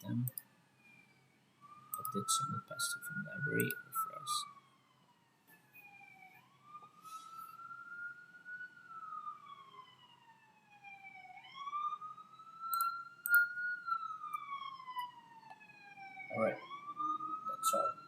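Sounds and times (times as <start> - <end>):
wailing siren: 0.0 - 18.0.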